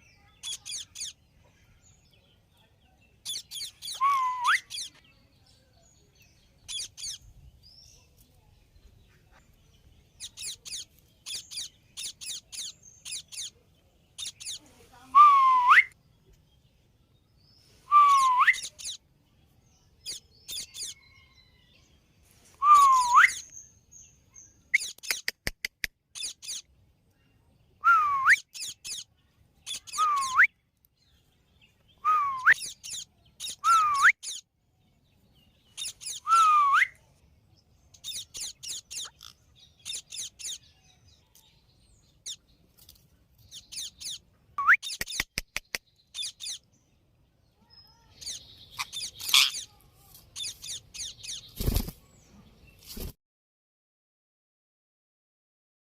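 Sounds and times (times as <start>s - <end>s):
parakeet chirping: 0.4s - 1.2s, 3.2s - 4.0s, 6.7s - 7.2s, 10.2s - 13.6s, 14.2s - 14.6s, 18.6s - 19.0s, 26.2s - 26.6s, 28.4s - 29.1s, 29.7s - 30.3s, 32.6s - 34.4s, 35.7s - 36.2s, 38.0s - 40.6s, 43.5s - 44.2s, 46.1s - 46.6s, 48.2s - 49.6s, 50.4s - 51.6s
parakeet whistled call: 3.3s - 4.9s, 17.9s - 19.0s, 22.6s - 23.5s, 29.7s - 30.5s, 32.0s - 34.4s, 35.8s - 37.0s
quick run of clicks: 44.9s - 45.9s.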